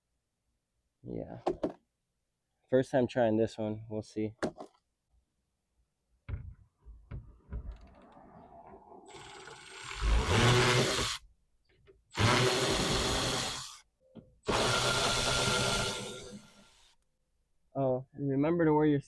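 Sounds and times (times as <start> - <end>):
cordless power tool spinning bolts: 9.1 - 11.2, 12.1 - 13.8, 14.5 - 16.9.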